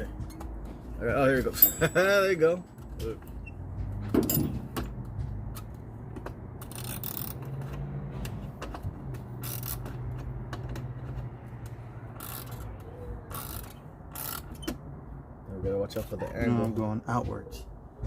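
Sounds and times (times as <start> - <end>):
hand ratchet clicking: 5.5 - 14.7.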